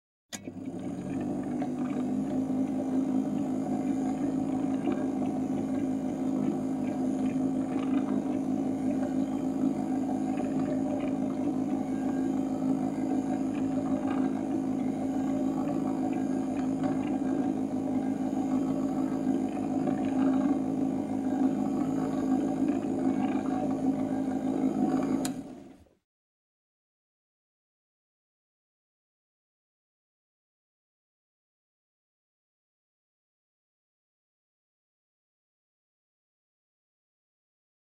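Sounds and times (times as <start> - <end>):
gramophone motor humming: 0.3 - 26.0.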